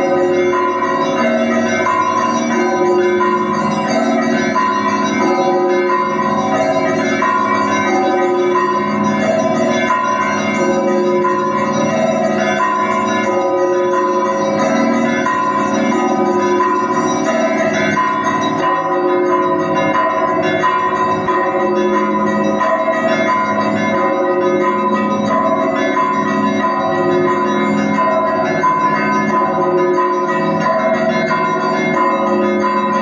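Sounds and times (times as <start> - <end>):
church bells pealing: 0.0 - 33.0.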